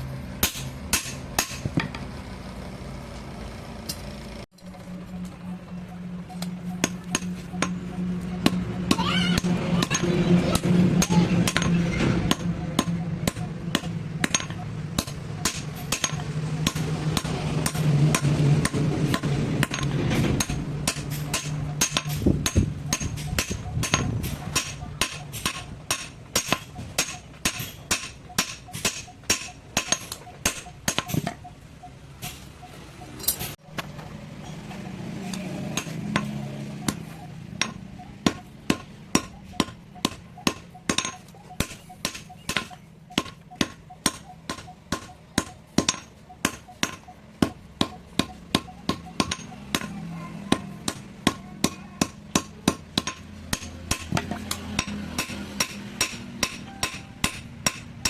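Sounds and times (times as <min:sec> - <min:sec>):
hand hammer striking metal: 0:00.4 - 0:02.0, 0:06.4 - 0:31.4, 0:35.3 - 0:58.0.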